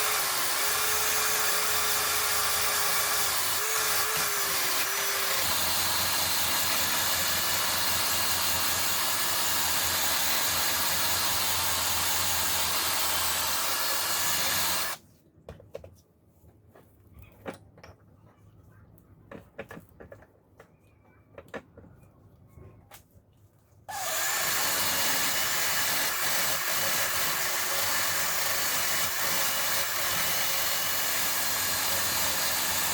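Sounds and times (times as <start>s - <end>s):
electric power tool motor hum: 0.0s - 15.0s, 23.9s - 32.9s.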